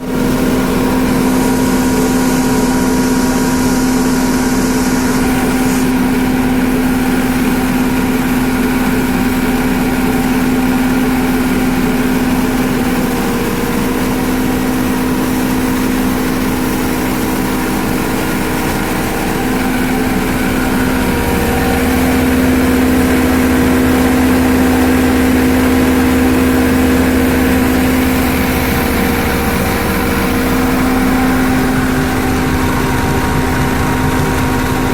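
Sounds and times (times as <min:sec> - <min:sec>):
machine hum with steady tones: 0:00.0 - 0:34.9.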